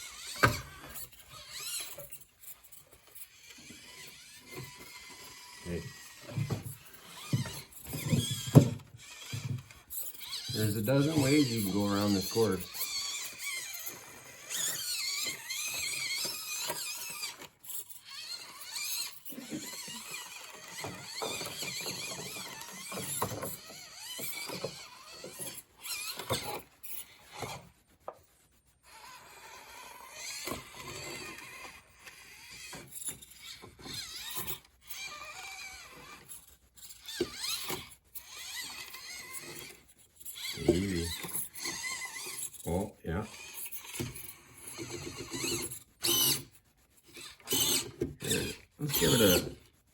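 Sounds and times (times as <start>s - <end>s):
small motor and gears whining: 0.0s - 49.9s.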